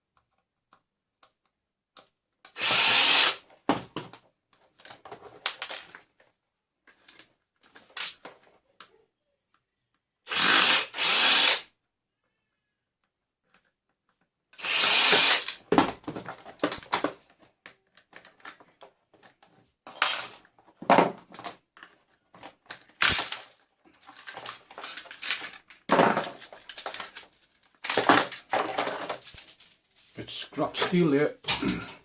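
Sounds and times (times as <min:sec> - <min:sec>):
vacuum cleaner parts clattering: 0:15.7 - 0:32.0.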